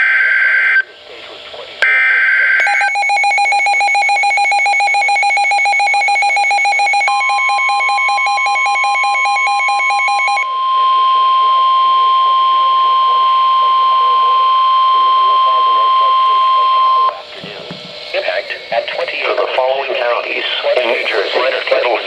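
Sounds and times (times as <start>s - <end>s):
radio alarm beeping in pulses: 1.8s - 17.2s
steady warning alarm tone: 1.8s - 17.2s.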